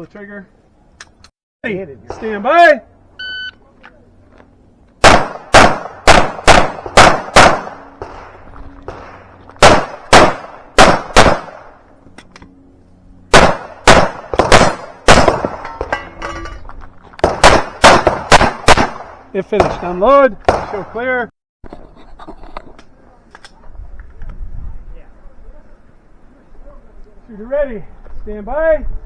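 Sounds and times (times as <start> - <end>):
pistol shots: 5.0 - 11.8, 13.3 - 16.0, 17.2 - 20.9.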